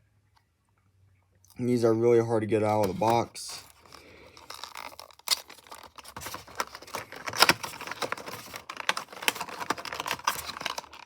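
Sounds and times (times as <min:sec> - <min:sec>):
plastic and cardboard rattling: 0:02.8 - 0:11.0.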